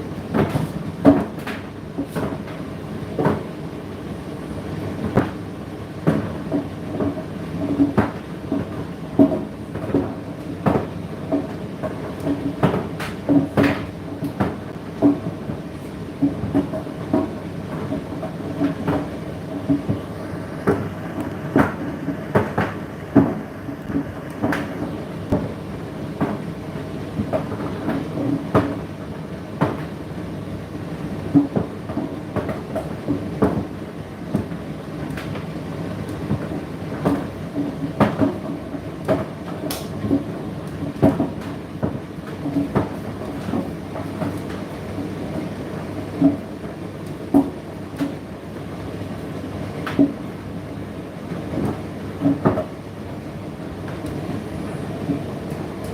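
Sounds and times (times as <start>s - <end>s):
tumble dryer motor hum: 0.0s - 55.9s.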